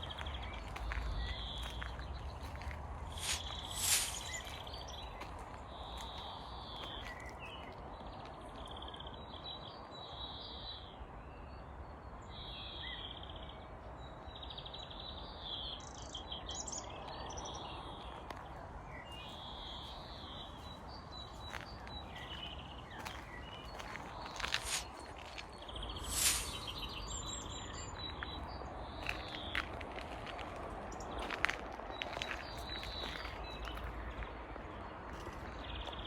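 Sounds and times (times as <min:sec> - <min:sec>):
songbirds singing: 0:00.0 - 0:36.0
steady background hiss: 0:03.1 - 0:04.7, 0:25.8 - 0:27.5.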